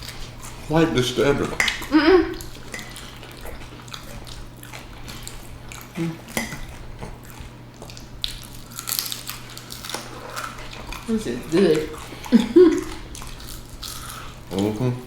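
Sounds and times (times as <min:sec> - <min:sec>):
cutlery and dishes clinking: 0:02.7 - 0:03.0.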